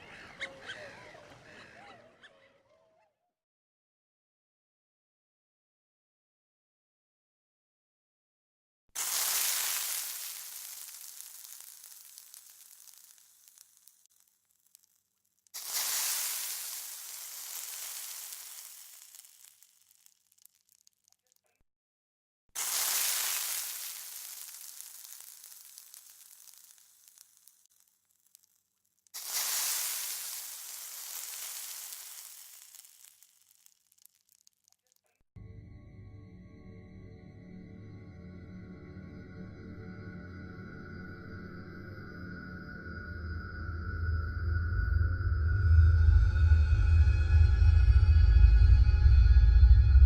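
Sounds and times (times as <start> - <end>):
cymbal-like crash effect: 41.8 - 50.0.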